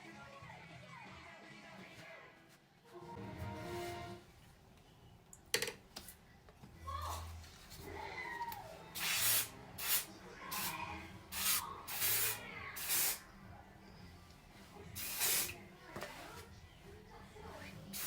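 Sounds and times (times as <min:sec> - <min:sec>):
hair spray hissing bursts: 0:09.0 - 0:13.2, 0:15.0 - 0:15.6.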